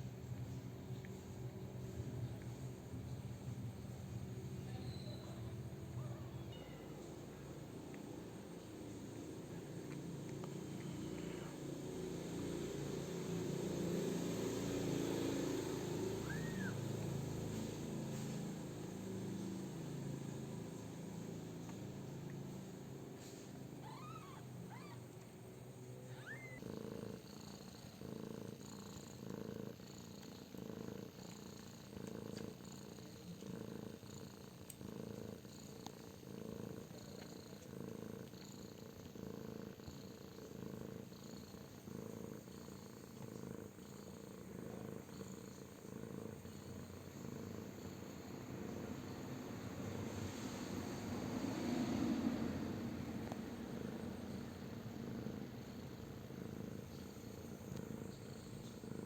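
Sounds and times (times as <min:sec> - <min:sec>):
cat purring: 0:00.0 - 0:59.0.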